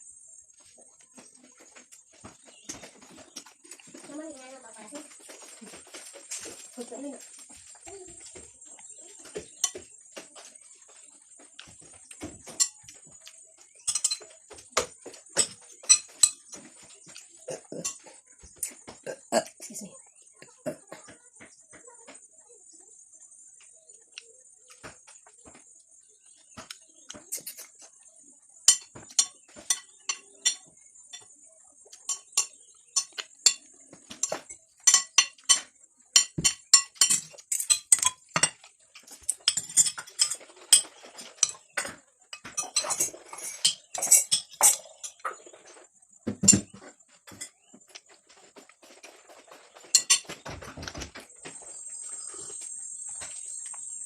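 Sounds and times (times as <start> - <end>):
insects chirping: 0.0 - 54.0
cutlery scraping a plate: 12.4 - 14.3, 15.4 - 18.1, 28.7 - 31.3, 32.0 - 51.0.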